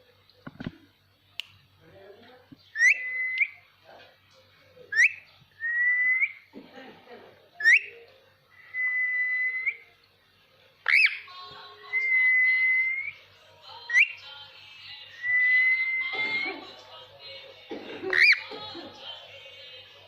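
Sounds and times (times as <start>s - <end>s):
parrot whistling: 2.7s - 3.6s, 4.9s - 6.5s, 7.6s - 8.0s, 8.6s - 9.9s, 10.8s - 11.3s, 11.9s - 13.2s, 13.8s - 14.3s, 15.2s - 16.6s, 18.0s - 18.5s.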